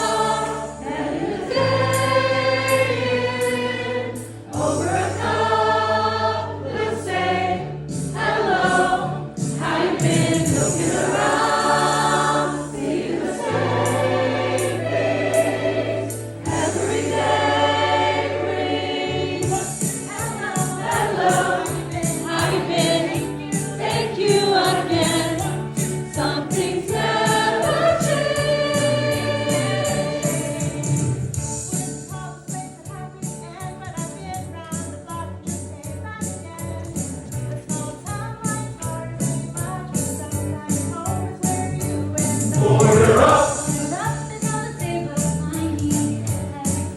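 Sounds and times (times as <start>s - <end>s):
choir singing: 0.0s - 31.0s, 42.5s - 43.8s
held bass notes: 42.5s - 43.7s.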